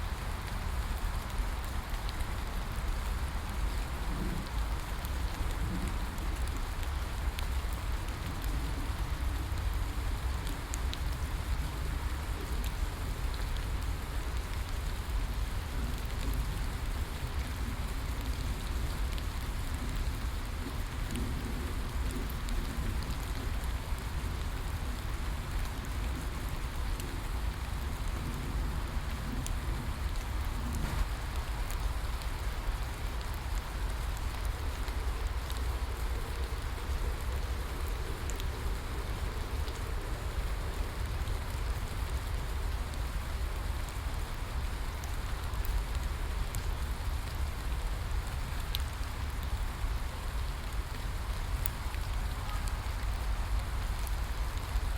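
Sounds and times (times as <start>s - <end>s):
steady rain hiss: 0.0s - 54.9s.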